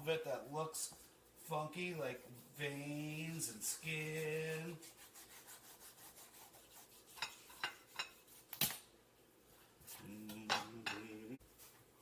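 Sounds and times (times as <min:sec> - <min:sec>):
knife rasping on cutting board: 0:04.8 - 0:08.5.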